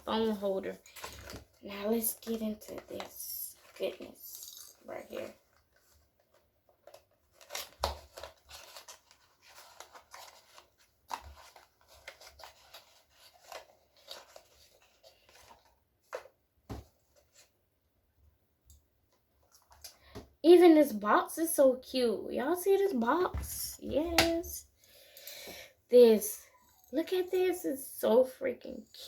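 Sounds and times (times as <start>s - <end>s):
packaging crinkling and ripping: 6.8s - 15.7s.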